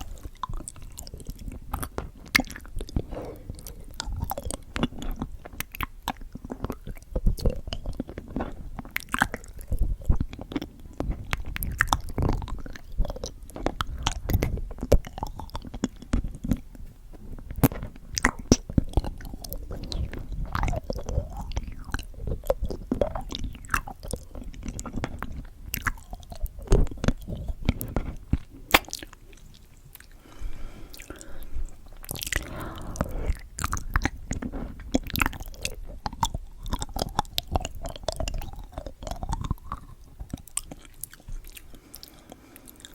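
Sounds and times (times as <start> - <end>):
candy crunching: 0.0 - 42.9
wet mouth clicks: 0.0 - 42.9.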